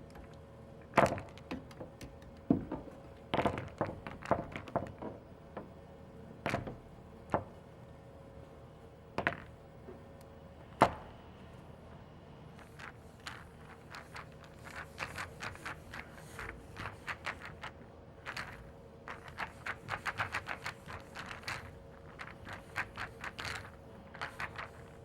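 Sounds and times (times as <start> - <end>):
pool balls clacking: 0.0 - 5.8
faint steady hum: 0.0 - 25.0.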